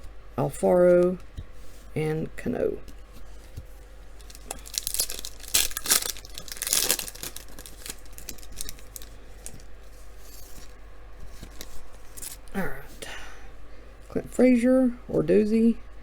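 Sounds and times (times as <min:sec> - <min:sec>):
foil wrapper tearing and crinkling: 0:04.2 - 0:09.7, 0:11.5 - 0:12.5.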